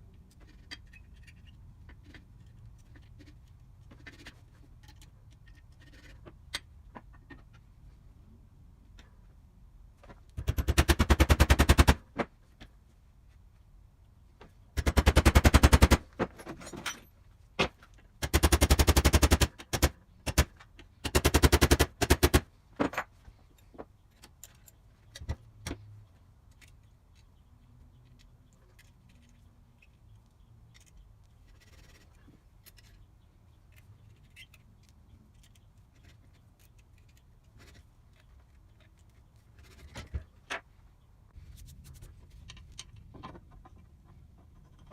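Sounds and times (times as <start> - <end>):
metal parts clicking: 22.8 - 40.2.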